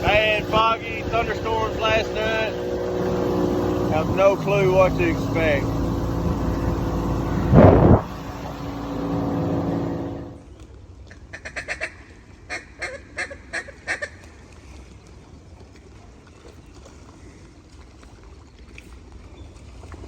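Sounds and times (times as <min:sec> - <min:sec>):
boat motor running: 0:00.0 - 0:10.5.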